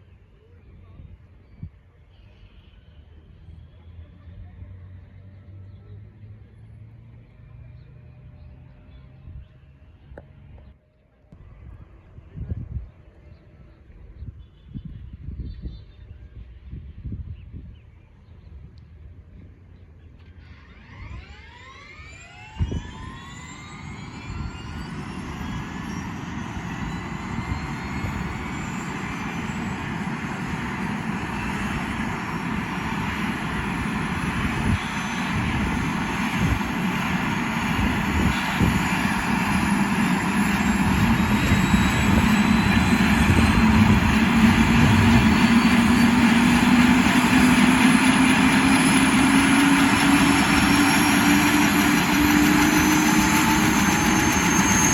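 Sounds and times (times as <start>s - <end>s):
low hum: 18.3s - 54.9s
helicopter turbine whine: 19.9s - 54.9s.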